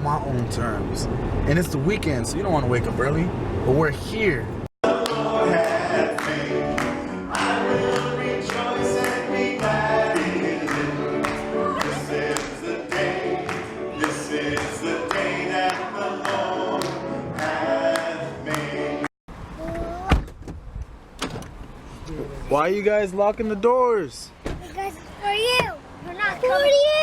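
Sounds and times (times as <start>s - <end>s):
gospel choir singing over a beat: 4.8s - 19.1s.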